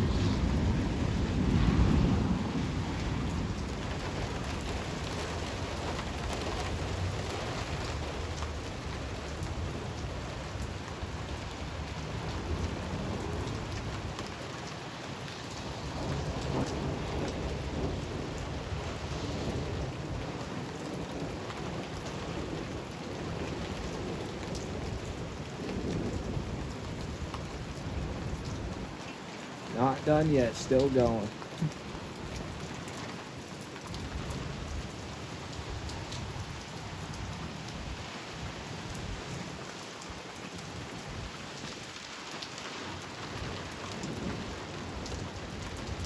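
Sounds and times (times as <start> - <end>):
thunder rumbling: 0.0 - 7.4, 15.7 - 29.0, 29.7 - 32.7
heavy rain falling: 0.0 - 46.0.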